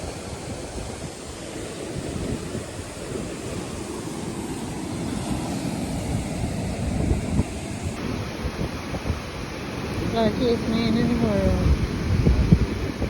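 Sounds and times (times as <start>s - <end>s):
wind gusting on microphone: 0.0s - 13.0s
sea waves splashing on rocks: 8.0s - 13.0s.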